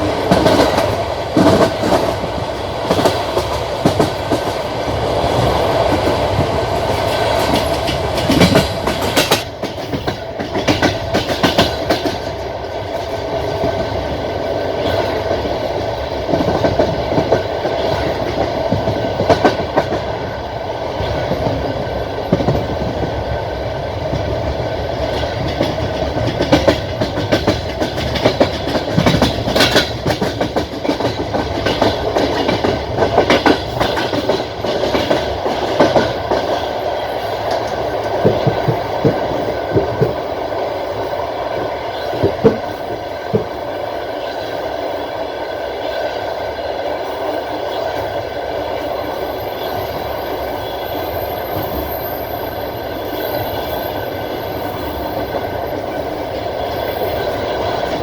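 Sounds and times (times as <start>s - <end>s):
train wheels clacking over rail joints: 0.0s - 20.3s, 24.0s - 40.6s, 41.5s - 44.6s
train rumbling along rails: 0.0s - 58.0s.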